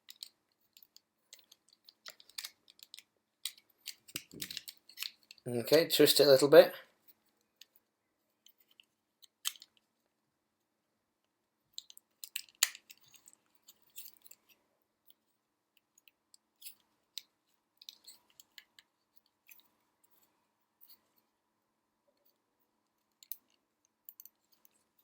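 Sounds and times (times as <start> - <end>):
plastic parts clicking and scraping: 0.0 - 5.5, 7.0 - 10.0, 11.7 - 21.1, 23.0 - 25.0.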